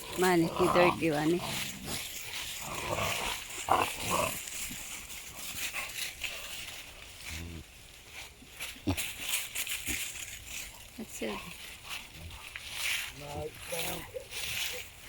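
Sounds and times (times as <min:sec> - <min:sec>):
puppies growling and grunting: 0:00.0 - 0:06.3.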